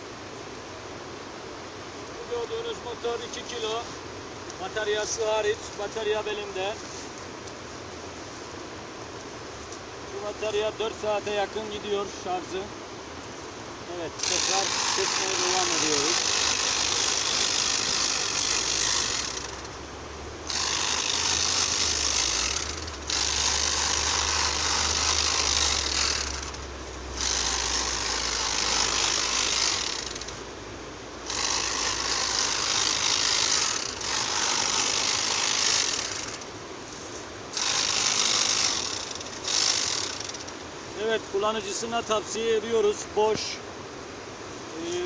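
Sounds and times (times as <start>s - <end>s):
harvesting machine buzzing: 14.2s - 19.8s, 20.4s - 30.4s, 31.2s - 36.5s, 37.5s - 40.6s.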